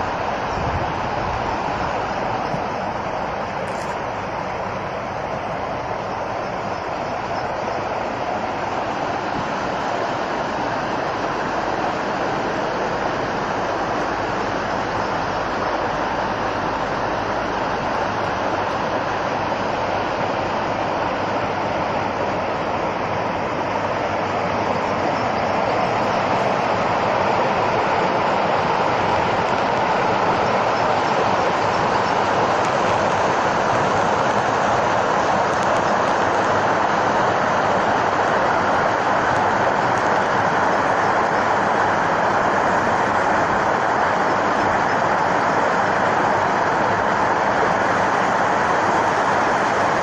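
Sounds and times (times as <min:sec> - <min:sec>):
rushing water: 0:00.0 - 0:50.0.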